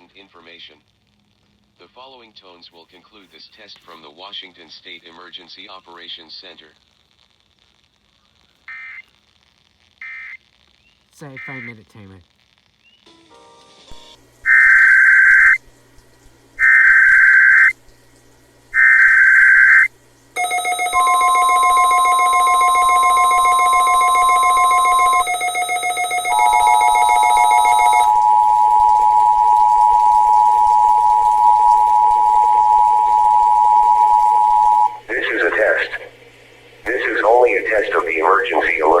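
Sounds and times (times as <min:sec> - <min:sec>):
digital header bursts: 0:16.6 - 0:17.7, 0:18.8 - 0:28.3
two-tone attention signal: 0:18.8 - 0:35.1
steady alert tone: 0:20.4 - 0:35.0.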